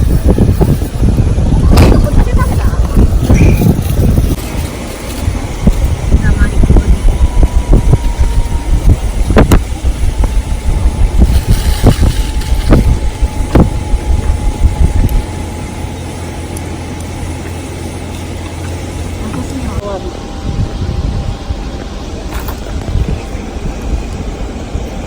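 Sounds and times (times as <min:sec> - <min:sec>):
heavy low rumble: 0:00.0 - 0:25.0.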